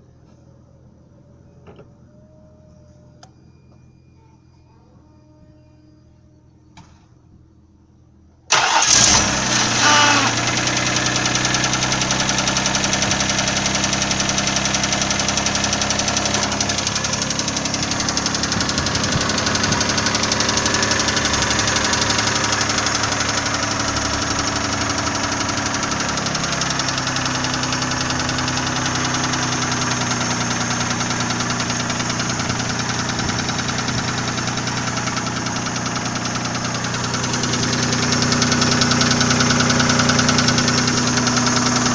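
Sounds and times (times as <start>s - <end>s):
car engine starting and idling: 8.5s - 41.9s
rapid engine knock: 9.6s - 41.9s.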